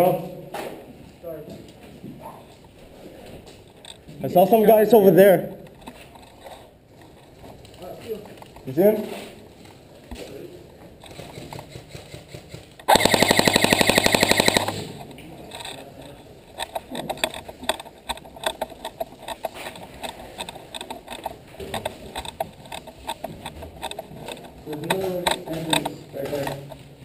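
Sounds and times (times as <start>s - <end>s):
faint clicks and knocks: 1.0s - 4.2s, 5.6s - 8.8s, 9.4s - 27.0s
airsoft gun full-auto burst: 11.9s - 15.0s.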